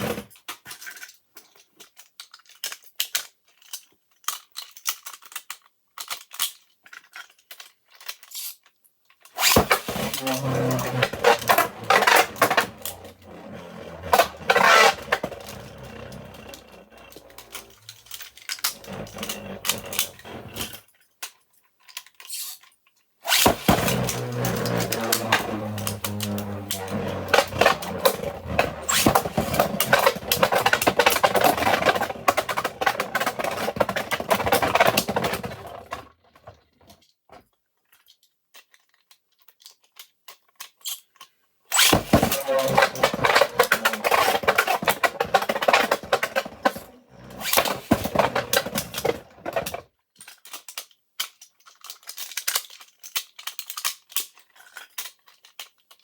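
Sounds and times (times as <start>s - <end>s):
spinning tops whirring and clattering: 9.4s - 20.8s, 23.3s - 36.0s, 41.8s - 49.8s.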